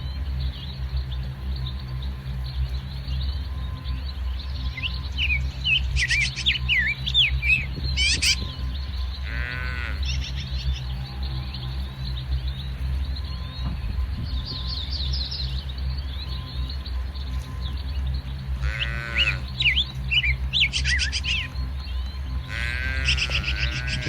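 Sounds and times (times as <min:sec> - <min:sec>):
small birds chirping: 0:00.0 - 0:24.0
steady low hum: 0:00.0 - 0:24.0
buzzy bird call: 0:05.2 - 0:08.6, 0:18.6 - 0:21.7, 0:22.4 - 0:24.0.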